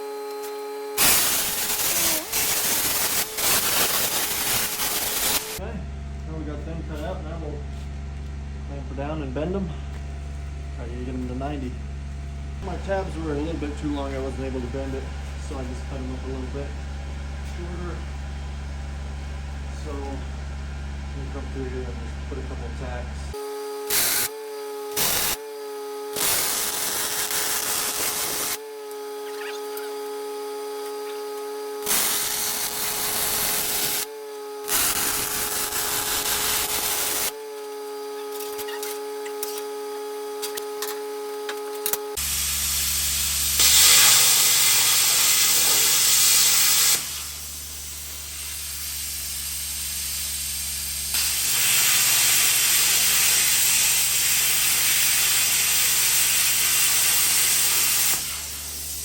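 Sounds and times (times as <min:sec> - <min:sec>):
welder crackling hiss: 0:00.0 - 0:05.6, 0:23.3 - 0:59.0
machine hum: 0:00.0 - 0:52.1.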